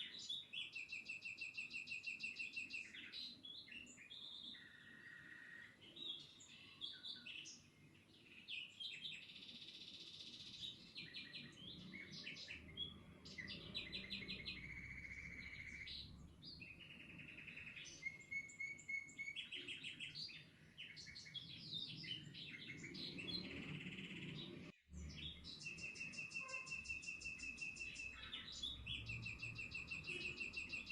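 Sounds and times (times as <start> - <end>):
songbirds chirping and singing: 0.0 - 30.9.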